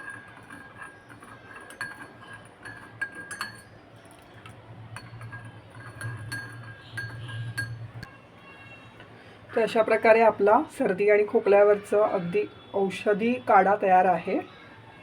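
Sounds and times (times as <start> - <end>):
metal spoon clinking against cup: 0.0 - 8.1.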